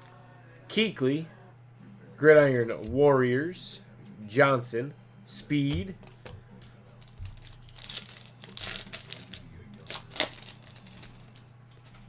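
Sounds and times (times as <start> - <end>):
foil wrapper crinkling: 6.0 - 12.0.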